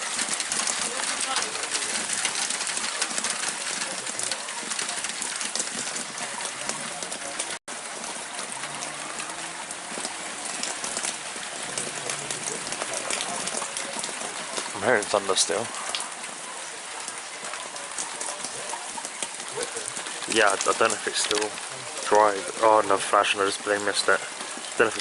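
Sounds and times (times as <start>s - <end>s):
rain pattering: 0.0s - 25.0s.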